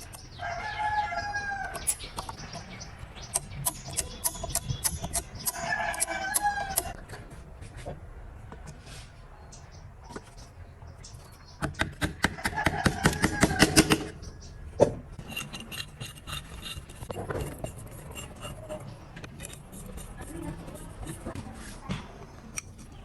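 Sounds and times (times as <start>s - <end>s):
hand tool scraping metal: 0.0s - 7.1s, 15.2s - 21.8s.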